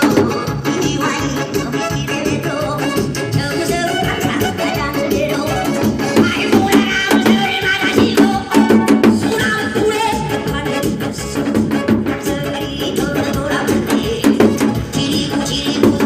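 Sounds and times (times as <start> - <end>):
hourglass drum beaten fast: 4.2 - 10.6.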